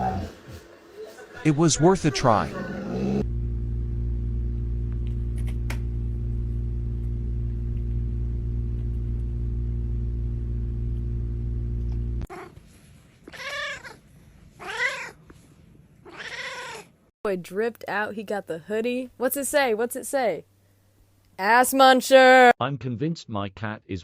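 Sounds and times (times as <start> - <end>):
steady low hum: 2.8 - 12.3
cat meowing: 13.3 - 14.0, 14.6 - 15.2, 16.0 - 16.9.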